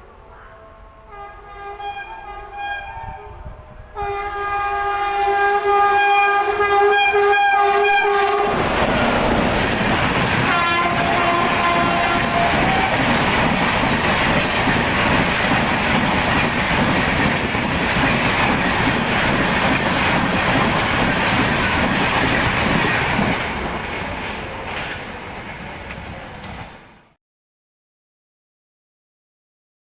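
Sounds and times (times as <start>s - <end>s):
train horn: 0.0s - 13.6s
train wheels rumbling on rails: 6.5s - 27.2s.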